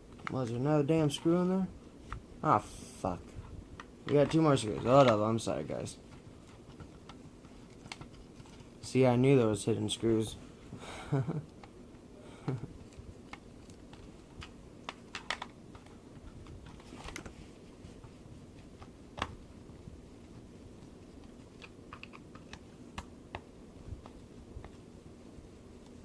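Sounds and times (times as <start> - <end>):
low steady hum: 0.0 - 26.0
screwdriver and plastic parts clicking: 12.8 - 17.3, 21.6 - 23.1.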